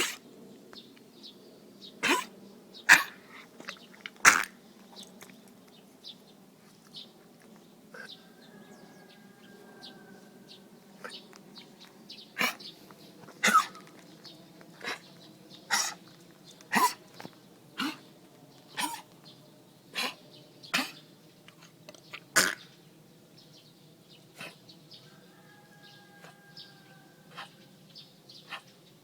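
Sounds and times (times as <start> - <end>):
dog coughing and retching: 2.0 - 2.3, 2.9 - 4.6, 12.4 - 14.1, 14.8 - 15.1, 15.7 - 16.0, 16.7 - 17.2, 17.8 - 18.1, 18.8 - 19.1, 19.9 - 21.0, 21.6 - 22.7, 24.4 - 24.6.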